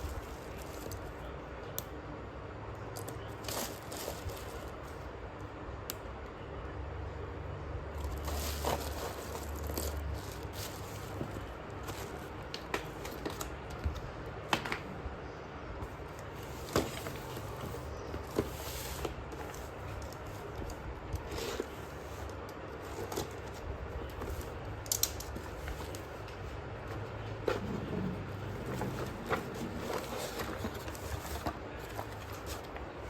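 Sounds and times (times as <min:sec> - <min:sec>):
steady low hum: 0:13.4 - 0:33.0.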